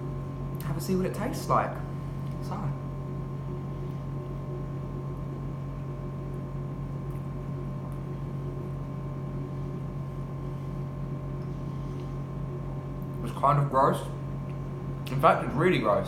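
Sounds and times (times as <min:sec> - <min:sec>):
low mechanical hum: 0:00.0 - 0:16.0.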